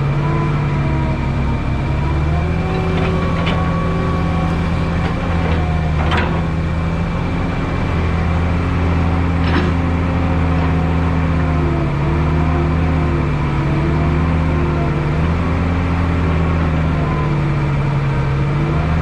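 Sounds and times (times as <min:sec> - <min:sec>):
diesel engine running: 0:00.0 - 0:19.0
short metallic knocks: 0:02.5 - 0:07.0.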